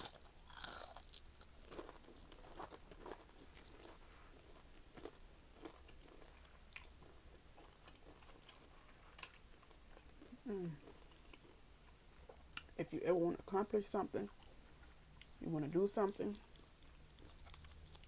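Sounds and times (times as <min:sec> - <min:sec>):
chewing crunchy fried shrimp: 0:00.0 - 0:12.8, 0:16.4 - 0:18.0.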